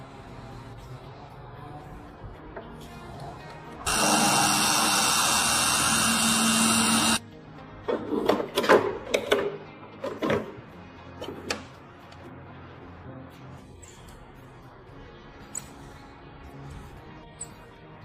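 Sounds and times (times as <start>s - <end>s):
background music: 0.0s - 18.0s
power tool running: 3.9s - 7.2s.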